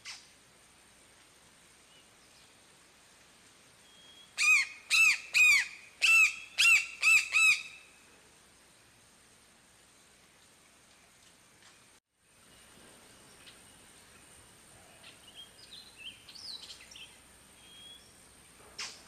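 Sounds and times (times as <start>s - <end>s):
faint high hiss: 0.0s - 19.0s
bird calling clear notes: 3.8s - 8.0s, 15.0s - 18.2s.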